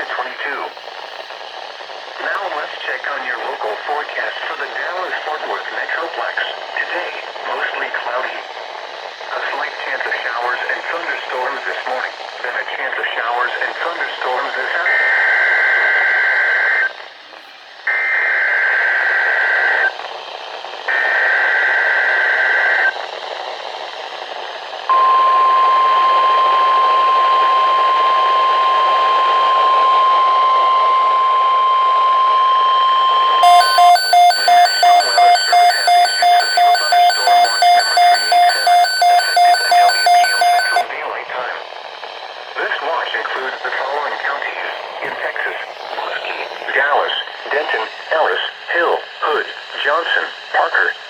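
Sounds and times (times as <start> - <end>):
radio static hiss: 0.0 - 1.4, 2.1 - 8.5, 9.2 - 15.1, 42.6 - 51.0
rapid electronic beeping: 32.8 - 40.9
screeching digital data bursts: 33.4 - 40.8
steady alert tone: 33.4 - 40.8.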